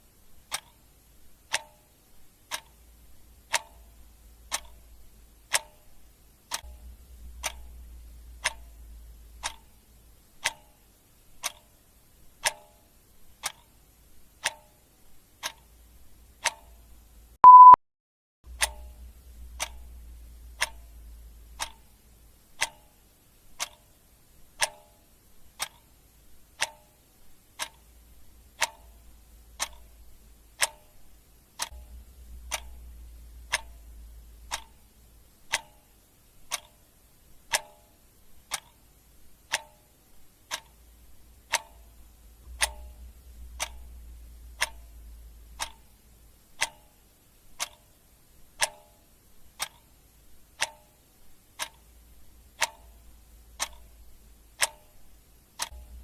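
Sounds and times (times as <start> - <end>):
clock ticking: 0.3 - 17.8, 18.5 - 56.0
short loud beep: 17.4 - 17.8.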